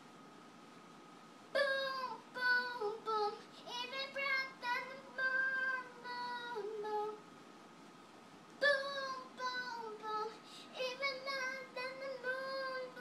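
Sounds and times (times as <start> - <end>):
faint high whine: 0.0 - 13.0
girl singing: 1.5 - 7.3, 8.6 - 13.0.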